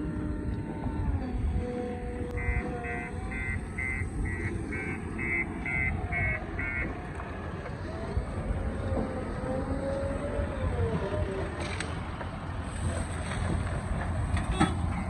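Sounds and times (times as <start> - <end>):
diesel engine rumbling: 0.0 - 15.0
reversing alarm beeping: 2.3 - 7.0.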